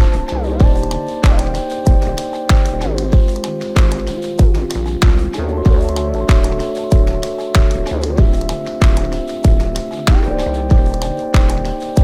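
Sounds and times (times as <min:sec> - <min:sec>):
synth music with strong beat: 0:00.0 - 0:12.0.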